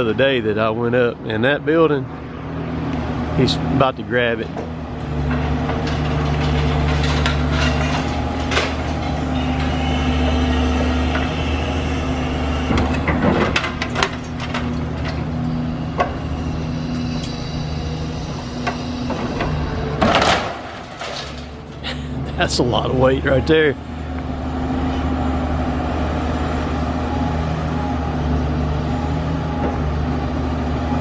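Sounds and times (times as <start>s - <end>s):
heavy diesel engines running: 0.0s - 31.0s
debris crashing down: 5.3s - 9.4s, 13.1s - 17.1s, 19.4s - 21.8s.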